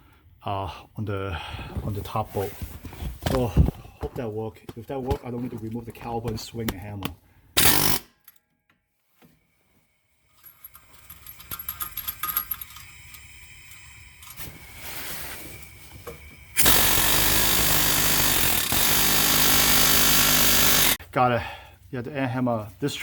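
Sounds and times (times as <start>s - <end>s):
pneumatic air hammer: 7.6s - 8.1s, 16.5s - 21.0s
metallic clinks of tools: 10.4s - 13.3s.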